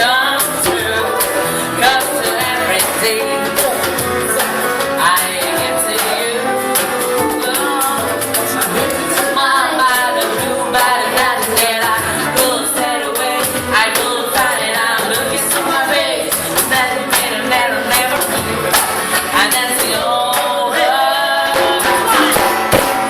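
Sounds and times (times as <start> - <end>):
person singing: 0.0 - 23.0
steady percussive beat: 21.7 - 23.0.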